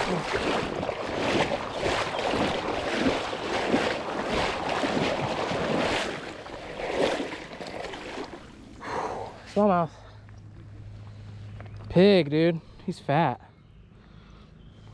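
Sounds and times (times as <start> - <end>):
water splashing and sloshing: 0.0 - 11.9.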